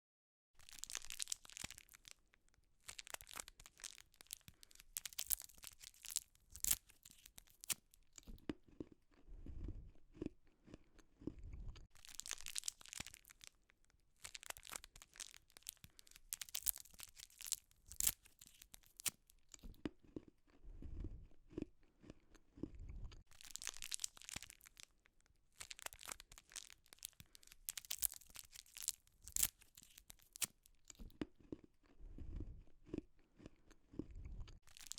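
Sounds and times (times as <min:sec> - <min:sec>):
candy wrapper crinkling and tearing: 0:00.6 - 0:09.2, 0:11.8 - 0:20.5, 0:23.1 - 0:32.0, 0:34.4 - 0:34.9
crunchy chewing: 0:00.6 - 0:34.9.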